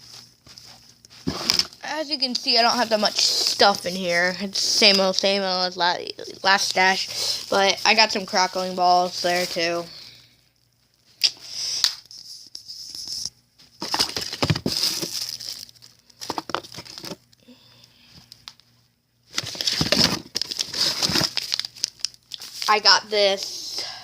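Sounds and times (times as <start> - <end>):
packaging crinkling and rustling: 0.0 - 9.9, 12.0 - 17.4, 19.3 - 23.0.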